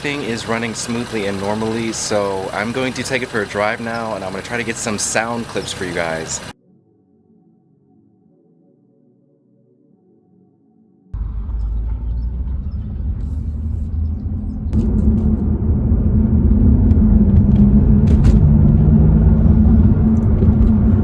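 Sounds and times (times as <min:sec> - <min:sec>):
car engine running: 0:00.0 - 0:06.6, 0:11.2 - 0:21.0.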